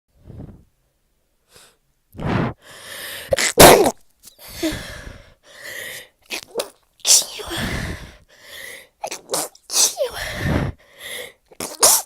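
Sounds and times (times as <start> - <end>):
stuffy breathing: 2.2 - 3.2
person sneezing: 3.3 - 4.0, 9.0 - 10.8, 11.6 - 12.0.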